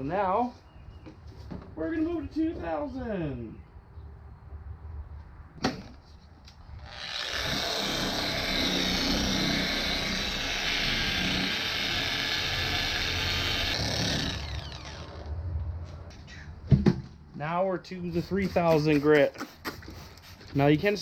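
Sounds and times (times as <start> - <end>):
orbital polisher running: 6.8 - 15.3.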